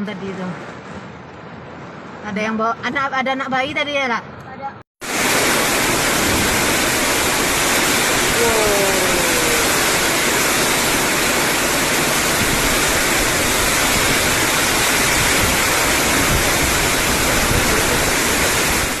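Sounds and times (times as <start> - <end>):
heavy rain downpour: 5.0 - 19.0
wind gusts: 5.0 - 19.0.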